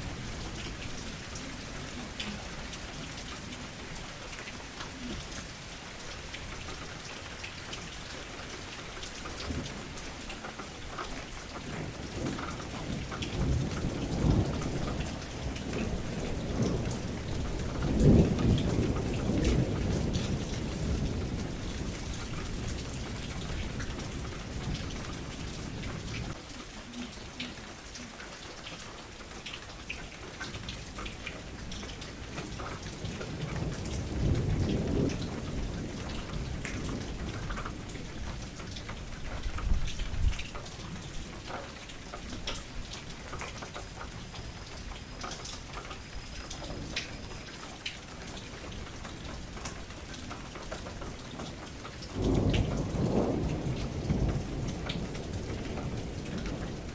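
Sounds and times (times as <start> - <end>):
raindrop ticks: 0.0 - 56.9
steady rain falling: 0.0 - 56.9
low thunder rolling: 11.7 - 26.3, 31.6 - 41.2, 52.0 - 56.9.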